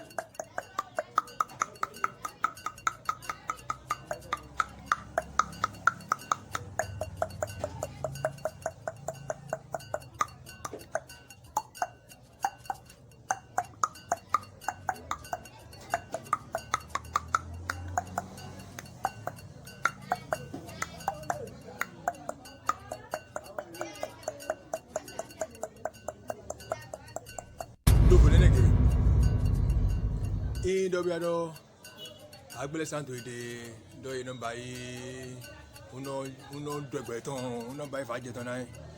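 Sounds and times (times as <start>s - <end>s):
rapid tongue clicks: 0.0s - 27.8s.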